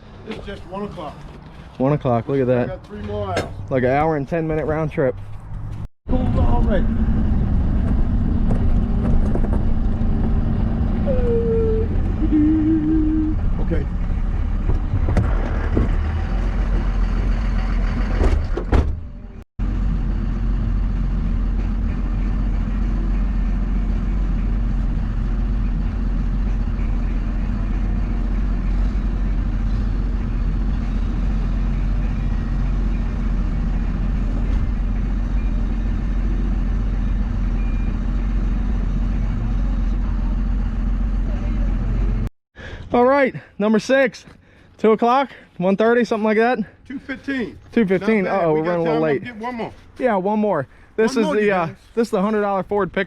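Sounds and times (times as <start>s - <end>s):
truck driving: 0.0s - 42.9s, 46.7s - 53.0s.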